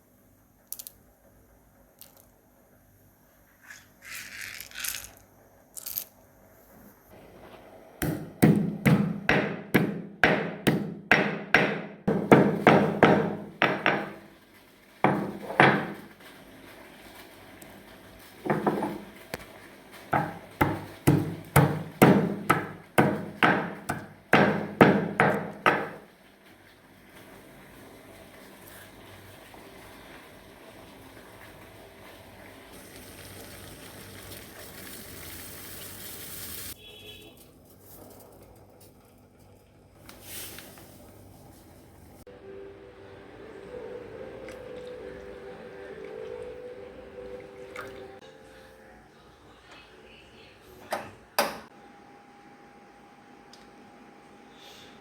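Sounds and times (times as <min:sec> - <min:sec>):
pestle pounding in mortar: 0:08.0 - 0:14.2, 0:15.1 - 0:16.0, 0:20.2 - 0:26.0.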